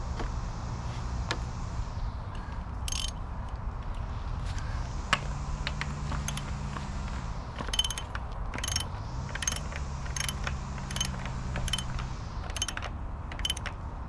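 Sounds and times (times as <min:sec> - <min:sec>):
ratchet wrench clicking: 0:02.3 - 0:04.8, 0:05.6 - 0:13.8.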